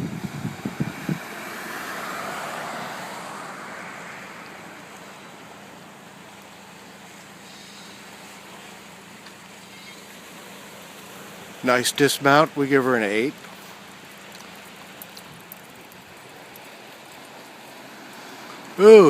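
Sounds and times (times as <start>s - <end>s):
wind thumps on microphone: 0.0s - 1.3s
steady outdoor hiss: 0.0s - 19.0s
vehicle passing: 0.3s - 5.9s, 13.2s - 19.0s.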